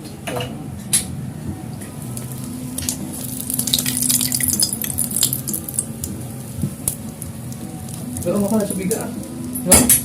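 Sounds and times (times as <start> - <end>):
egg sizzling in oil: 2.0 - 9.6.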